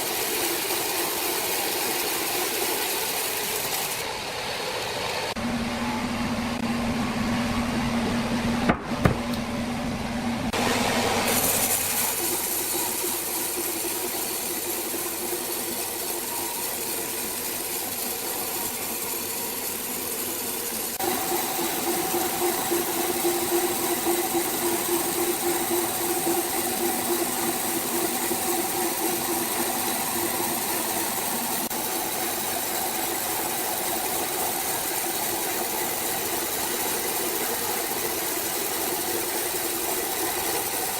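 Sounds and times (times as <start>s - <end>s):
hiss: 0.0s - 5.4s
sawmill machinery humming: 0.0s - 40.9s
sharp knocks: 8.7s - 9.4s.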